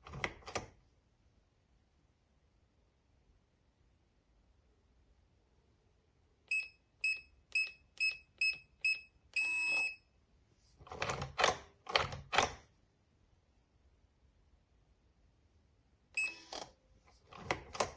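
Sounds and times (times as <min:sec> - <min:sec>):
keypad beeps: 0:06.5 - 0:10.1, 0:16.2 - 0:16.7.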